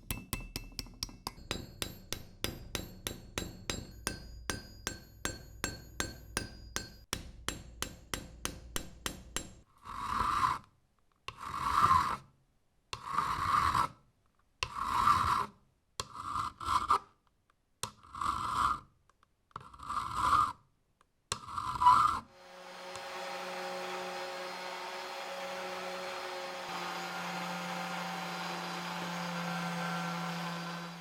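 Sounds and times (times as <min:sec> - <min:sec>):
small electric machine humming: 0:22.4 - 0:31.0.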